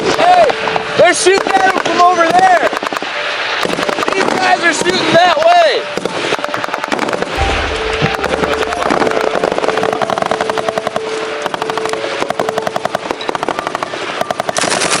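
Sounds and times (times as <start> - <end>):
machine gun automatic fire: 14.2 - 15.0.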